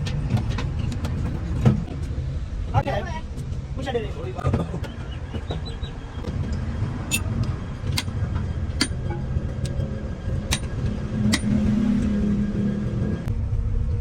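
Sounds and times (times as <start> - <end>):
steady low rumble: 0.0 - 14.0
low hum: 6.3 - 14.0
sharp metallic taps: 6.5 - 9.8.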